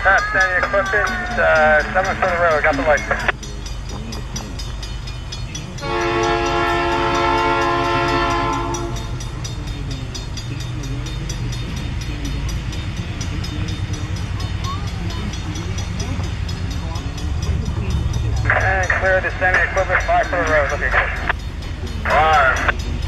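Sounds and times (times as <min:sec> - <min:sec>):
moving train rumble: 0:00.0 - 0:23.0
train horn blast: 0:05.8 - 0:09.3.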